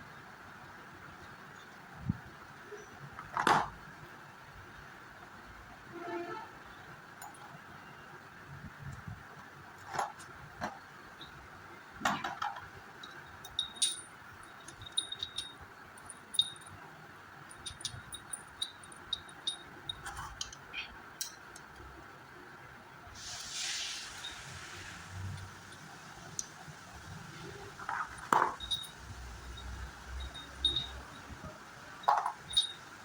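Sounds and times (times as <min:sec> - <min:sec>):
metal parts clinking: 0:07.1 - 0:07.6, 0:09.8 - 0:21.8, 0:25.2 - 0:33.0
brief hiss: 0:23.1 - 0:25.4.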